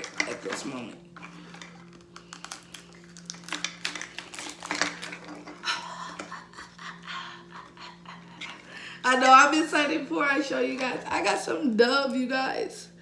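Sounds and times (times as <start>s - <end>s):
packaging crinkling: 0.0s - 6.8s
steady low hum: 0.0s - 13.0s.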